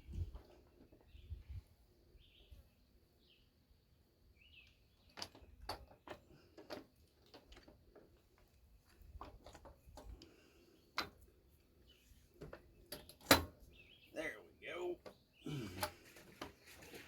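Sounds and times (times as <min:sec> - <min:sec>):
bird chirping: 0:00.0 - 0:03.6, 0:04.3 - 0:05.4, 0:11.8 - 0:16.1.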